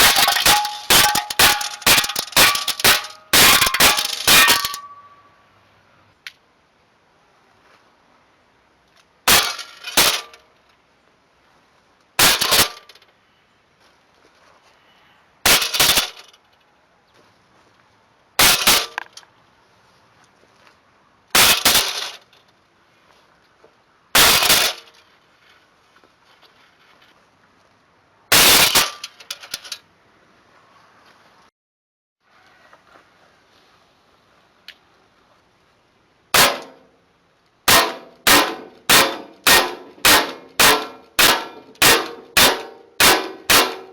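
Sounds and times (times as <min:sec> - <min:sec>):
pellet hitting target: 0:00.0 - 0:05.0, 0:36.4 - 0:36.8, 0:37.7 - 0:43.9
airsoft pistol shots: 0:37.7 - 0:43.9.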